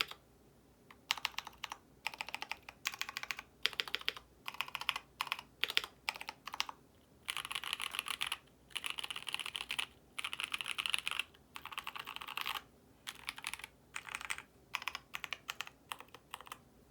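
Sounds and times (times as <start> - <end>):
typing on mechanical keyboard: 0.0 - 0.2, 0.9 - 16.6.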